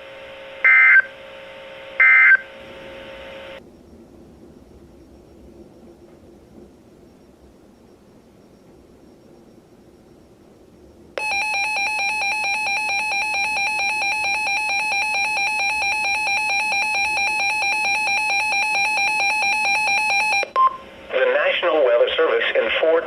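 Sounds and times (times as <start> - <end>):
steady tone: 2.3 - 21.2
warbling electronic alarm beeping: 3.6 - 20.8.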